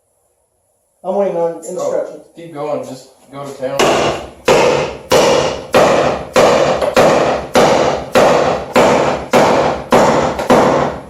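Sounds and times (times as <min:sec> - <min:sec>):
hammer pounding sheet metal: 0:03.7 - 0:11.0.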